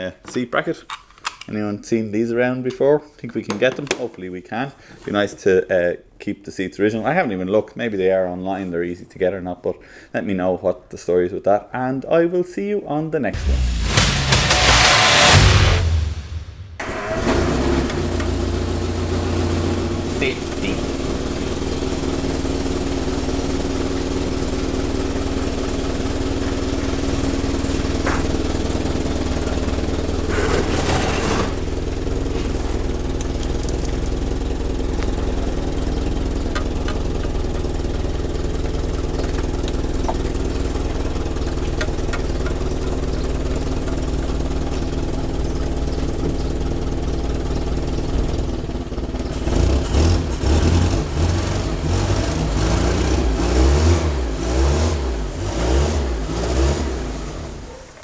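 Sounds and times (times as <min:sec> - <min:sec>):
brief rush of noise: 0:13.4 - 0:16.8
engine idling: 0:13.4 - 0:58.0.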